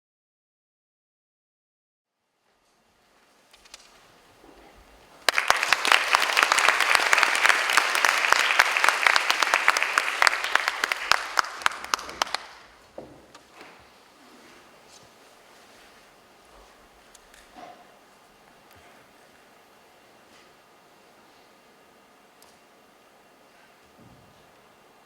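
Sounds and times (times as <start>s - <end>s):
audience applause: 5.2s - 12.8s.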